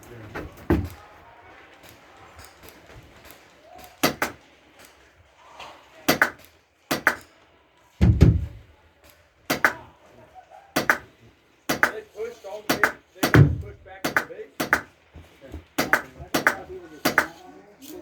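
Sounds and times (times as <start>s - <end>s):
airsoft gun cracks: 1.8s - 5.0s, 6.1s - 7.4s, 9.0s - 9.9s, 10.8s - 12.0s, 12.7s - 15.0s, 15.8s - 18.0s.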